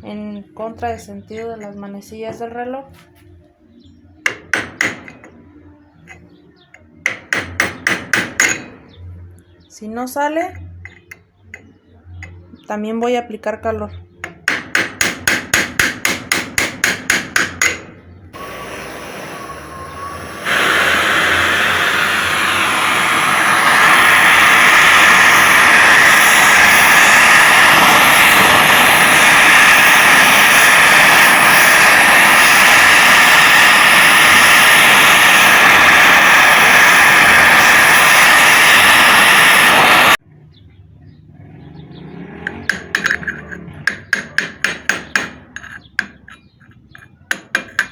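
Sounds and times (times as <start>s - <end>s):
blowtorch flame hissing: 18.4s - 40.2s.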